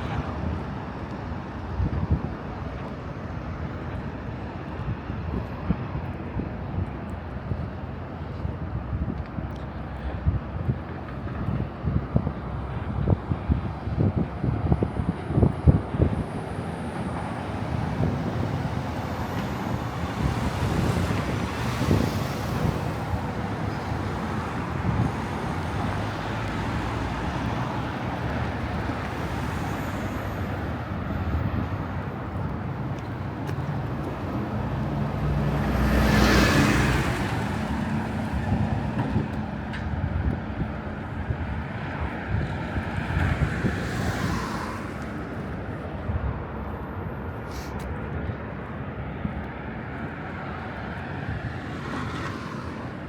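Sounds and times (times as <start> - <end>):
city street traffic: 0.0 - 53.0
vehicle passing close: 33.2 - 39.4.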